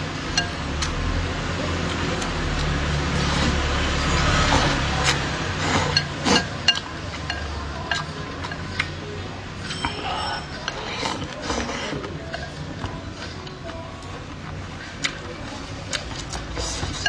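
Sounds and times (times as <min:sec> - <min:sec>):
chopsticks clicking against bowl: 0:00.3 - 0:01.2, 0:01.8 - 0:03.6, 0:04.7 - 0:09.0
slurping noodles: 0:01.5 - 0:07.4, 0:09.8 - 0:13.3.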